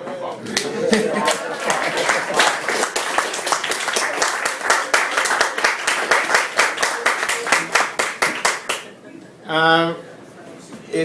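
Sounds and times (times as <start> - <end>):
audience applauding: 0.5 - 8.9.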